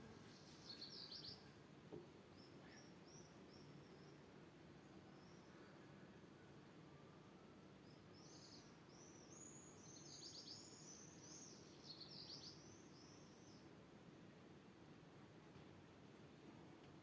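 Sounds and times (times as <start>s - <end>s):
songbird singing: 0.0s - 7.0s, 7.8s - 13.8s.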